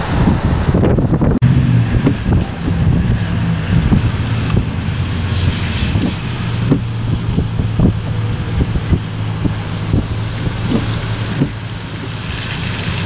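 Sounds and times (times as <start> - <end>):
low engine or traffic hum: 0.0 - 13.0
wind buffeting microphone: 0.0 - 13.0.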